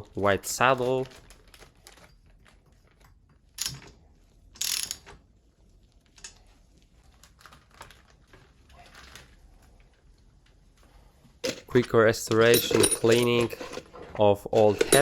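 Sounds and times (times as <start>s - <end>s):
small metal clicks and ratcheting: 3.6s - 3.9s, 4.6s - 5.1s.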